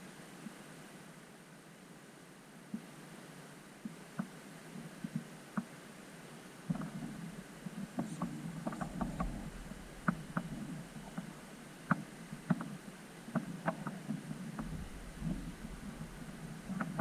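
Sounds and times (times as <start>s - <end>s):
low rumble: 6.7s - 13.1s, 14.4s - 17.0s
sharp clicks and knocks on rocks: 6.7s - 17.0s.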